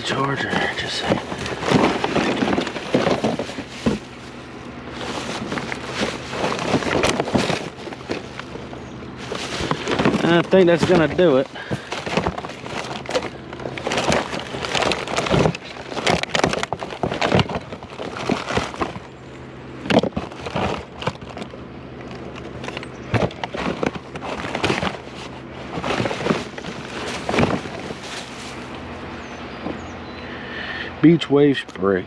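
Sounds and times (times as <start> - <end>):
junk clattering and rattling: 0.0 - 30.3
steady low hum: 0.0 - 32.0.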